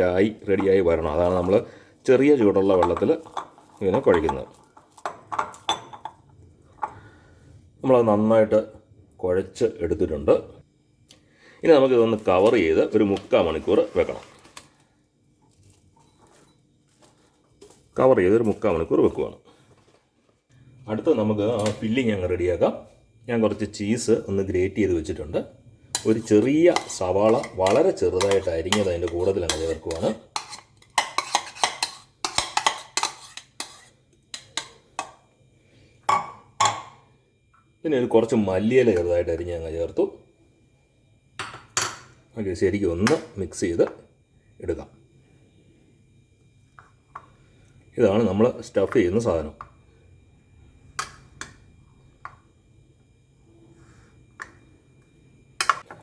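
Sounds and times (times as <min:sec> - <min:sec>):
kitchen utensils clicking: 0:26.0 - 0:35.1.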